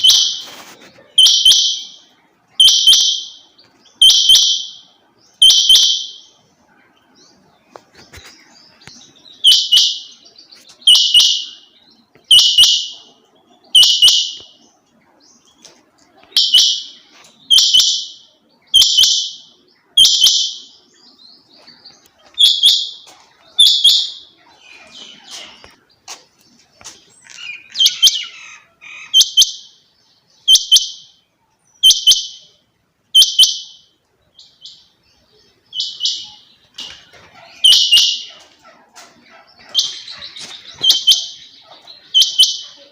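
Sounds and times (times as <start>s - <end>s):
quail calling: 27.2s - 29.7s, 35.8s - 42.9s.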